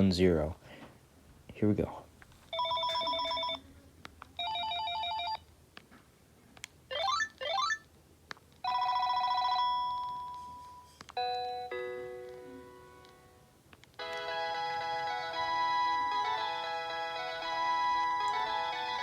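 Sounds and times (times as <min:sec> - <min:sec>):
cordless phone ringtones: 0:02.5 - 0:03.6, 0:04.4 - 0:05.4, 0:08.6 - 0:13.0, 0:14.0 - 0:19.0.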